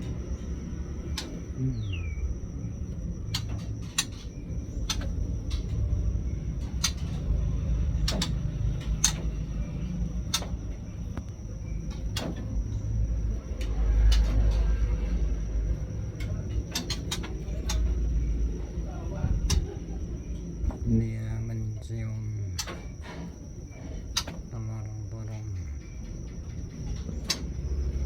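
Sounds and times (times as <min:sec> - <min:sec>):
faint high whine: 0:00.0 - 0:28.0
sharp clicks and knocks: 0:03.3 - 0:05.8, 0:08.0 - 0:09.4, 0:10.2 - 0:12.6, 0:16.2 - 0:18.0, 0:22.5 - 0:27.7.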